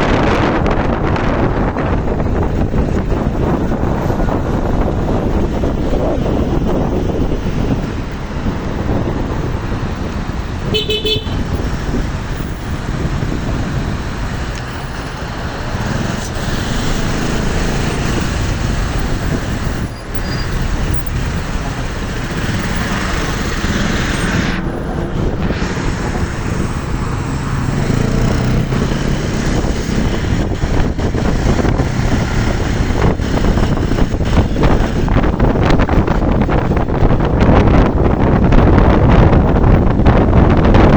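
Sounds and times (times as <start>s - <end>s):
motorcycle rumble: 0.0s - 40.9s
road traffic: 0.0s - 40.9s
wind rushing over microphone: 0.0s - 40.9s.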